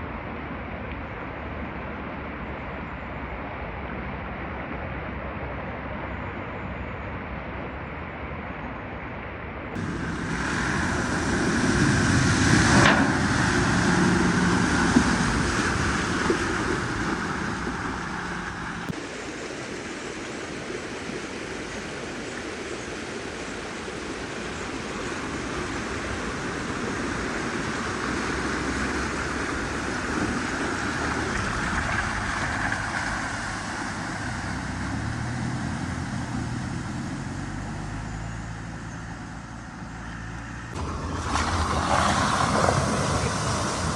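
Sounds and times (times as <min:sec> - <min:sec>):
vehicle engine noise: 0:00.0 - 0:43.9
water rushing and splashing: 0:09.8 - 0:43.9.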